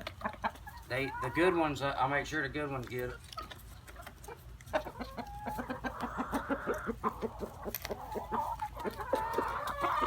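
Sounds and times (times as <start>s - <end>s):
chickens clucking: 0.0s - 10.0s.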